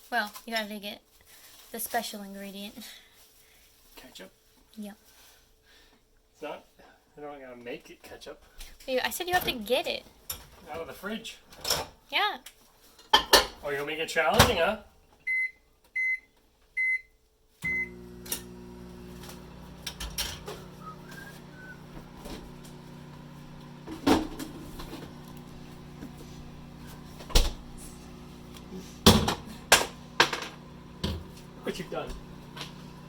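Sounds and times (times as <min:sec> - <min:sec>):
microwave keypad beeping: 0:15.3 - 0:17.1, 0:17.7 - 0:18.0
microwave oven humming: 0:17.6 - 0:33.0.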